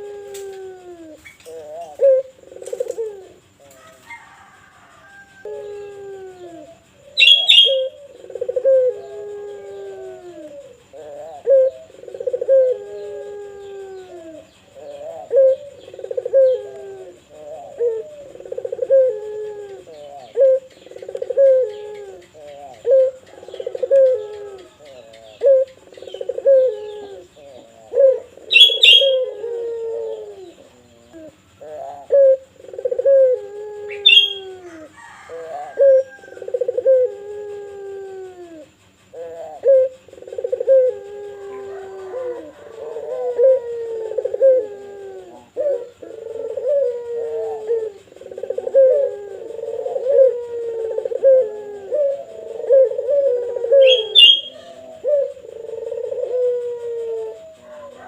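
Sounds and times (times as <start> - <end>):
dove cooing: 0.0 - 58.0
sharp high-pitched chirp: 53.9 - 54.6.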